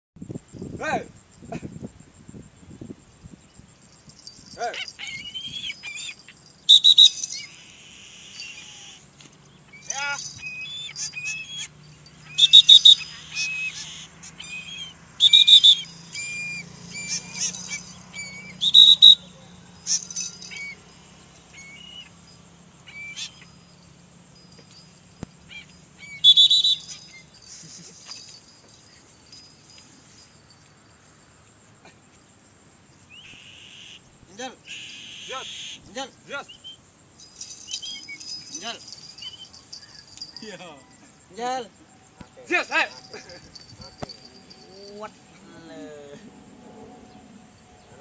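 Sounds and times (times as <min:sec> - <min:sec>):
high-pitched whistled calls: 0:04.2 - 0:29.9, 0:34.6 - 0:41.1.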